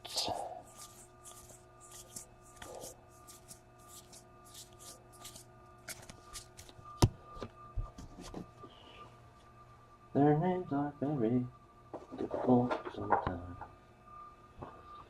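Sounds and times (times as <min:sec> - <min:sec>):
trading cards flipping papery swish: 0:00.1 - 0:06.8.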